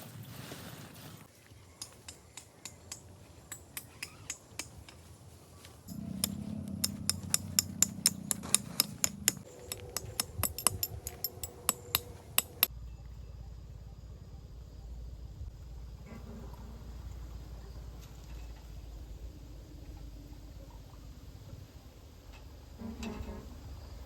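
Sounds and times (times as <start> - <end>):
steady low rumble: 5.8 - 18.0
sharp knocks: 5.9 - 12.7.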